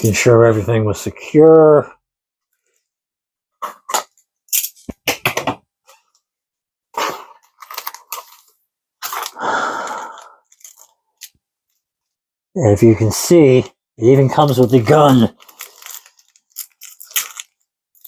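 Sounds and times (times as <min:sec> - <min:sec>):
packing material crinkling: 0:07.1 - 0:11.8, 0:14.4 - 0:18.0.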